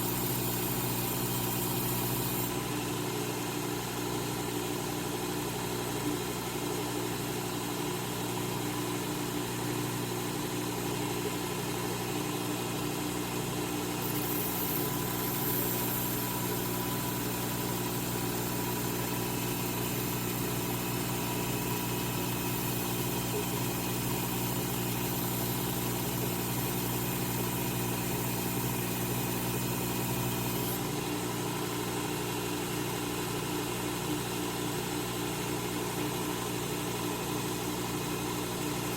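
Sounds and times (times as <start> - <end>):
belt grinder motor humming: 0.0 - 2.6, 14.0 - 21.5.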